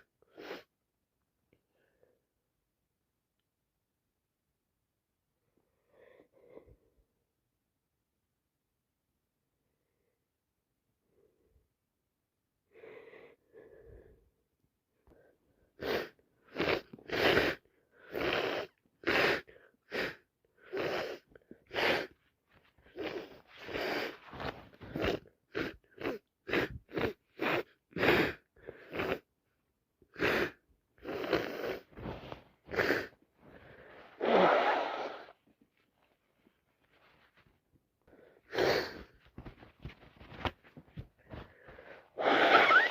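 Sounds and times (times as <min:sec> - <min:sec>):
quick breaths: 0:30.1 - 0:35.4, 0:36.9 - 0:42.9
woman sneezing: 0:34.2 - 0:35.3.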